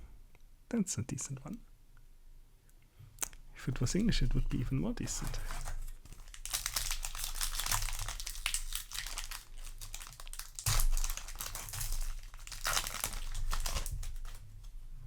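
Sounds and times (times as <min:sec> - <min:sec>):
foil wrapper crinkling: 0:05.0 - 0:14.8.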